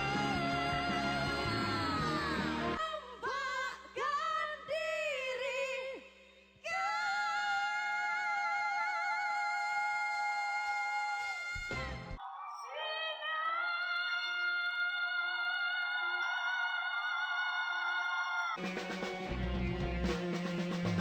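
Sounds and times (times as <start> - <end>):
pop band playing: 0.0 - 2.8, 18.6 - 21.0.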